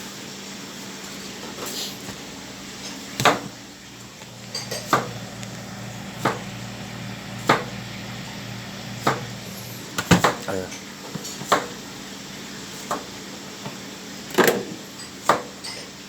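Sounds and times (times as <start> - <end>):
steady low hum: 2.3 - 11.1.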